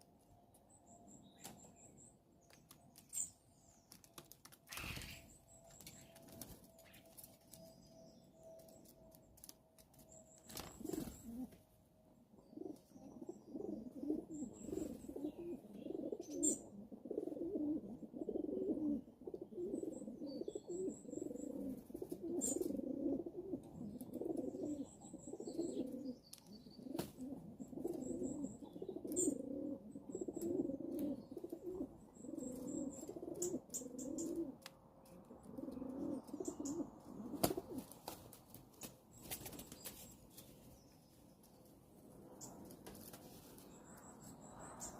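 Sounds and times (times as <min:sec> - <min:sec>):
pigeons cooing: 0:10.6 - 0:11.6, 0:12.4 - 0:34.6, 0:35.2 - 0:38.0.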